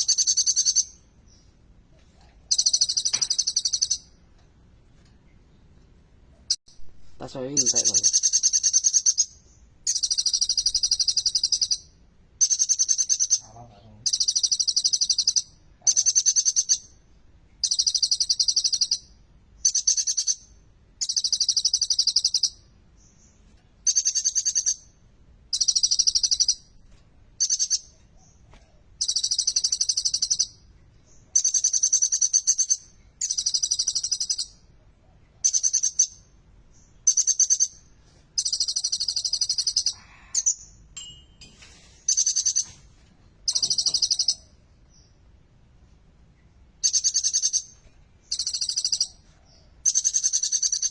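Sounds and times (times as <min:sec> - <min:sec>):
sunbird singing chattering notes: 0:00.0 - 0:01.5, 0:02.5 - 0:04.1, 0:07.3 - 0:17.0, 0:38.4 - 0:41.5, 0:43.4 - 0:45.2, 0:46.8 - 0:50.9.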